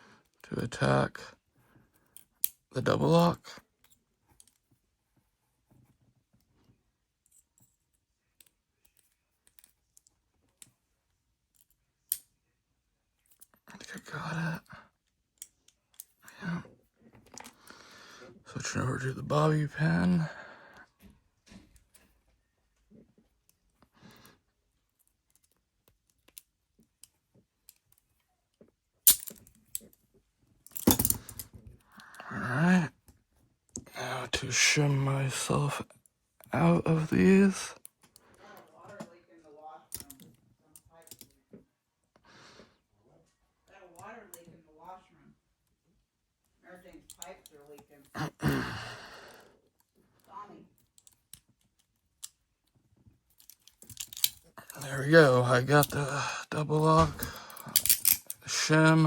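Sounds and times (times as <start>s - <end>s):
metal clicks in handcuff lock: 11.5s - 12.4s, 29.1s - 30.0s, 30.7s - 31.5s, 39.9s - 40.3s, 47.0s - 47.8s, 50.8s - 52.4s, 53.3s - 54.8s, 56.9s - 58.5s.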